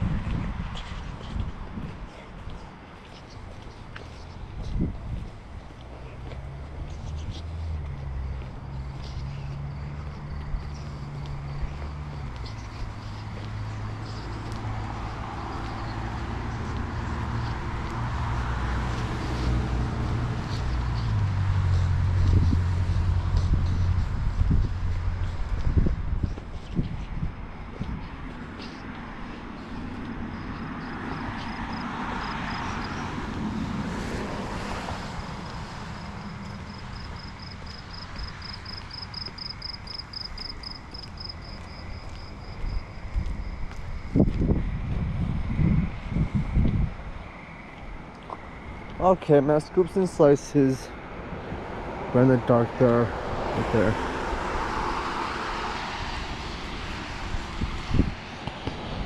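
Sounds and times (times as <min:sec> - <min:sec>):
motor vehicle engine running: 0:03.6 - 0:49.3.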